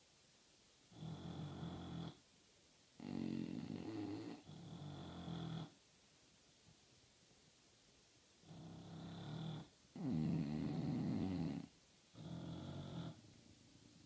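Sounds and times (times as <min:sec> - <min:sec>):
dog snoring: 0:00.9 - 0:02.2, 0:03.0 - 0:05.8, 0:08.4 - 0:13.4.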